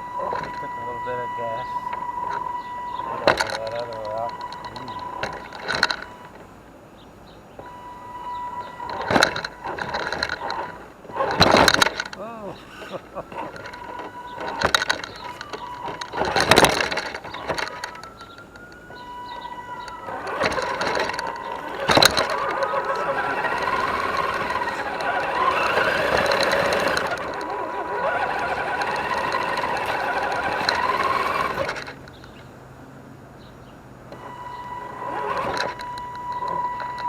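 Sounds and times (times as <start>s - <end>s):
electric motor whining: 0.0s - 6.7s, 7.5s - 32.2s, 34.1s - 37.0s
toy truck knocking on terrain: 7.6s - 32.3s.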